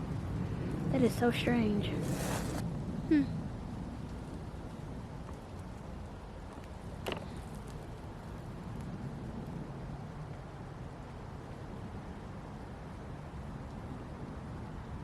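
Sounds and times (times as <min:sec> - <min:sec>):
low rumble and hiss: 0:00.0 - 0:15.0.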